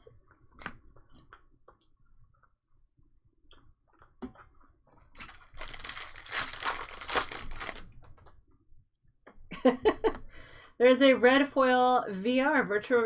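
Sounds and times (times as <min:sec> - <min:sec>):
wrapper tearing and crinkling: 0:05.2 - 0:07.9.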